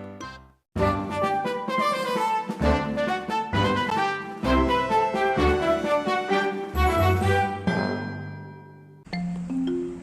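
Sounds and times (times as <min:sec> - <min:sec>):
brass tune over bass beat: 0:00.8 - 0:07.7.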